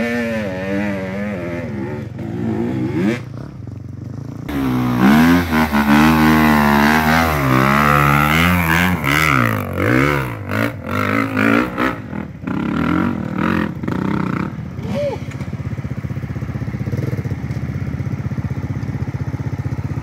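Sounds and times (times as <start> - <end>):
off-road vehicle engine revving: 0.0 - 3.6, 4.5 - 15.1.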